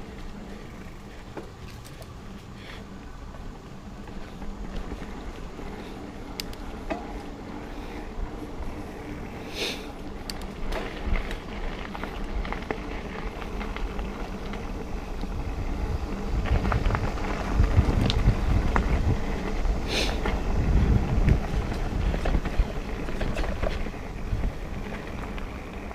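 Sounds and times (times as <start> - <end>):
bike rattles and clicks: 0.0 - 25.9
bike tyre rumble on dirt: 0.0 - 25.9
wind on microphone: 15.1 - 25.1.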